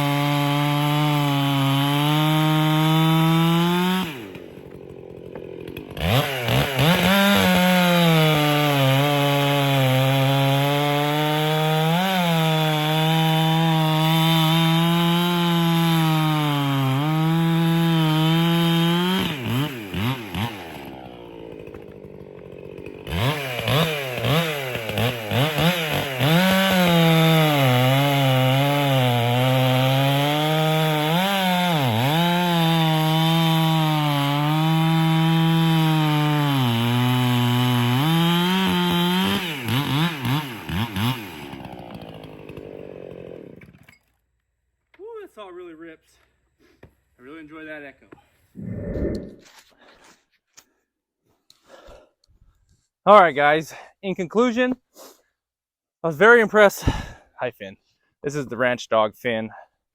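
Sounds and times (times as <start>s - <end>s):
chainsaw idling and revving: 0.0s - 44.2s
chainsaw cutting log: 0.0s - 44.3s, 56.7s - 57.3s.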